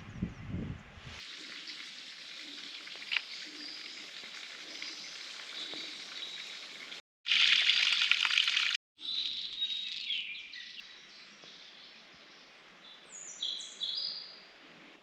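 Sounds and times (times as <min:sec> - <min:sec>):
forest hiss: 0:01.2 - 0:07.0.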